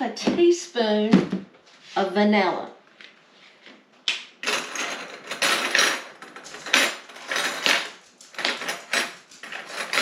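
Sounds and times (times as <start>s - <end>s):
utensils clinking against dishes: 4.4s - 10.0s.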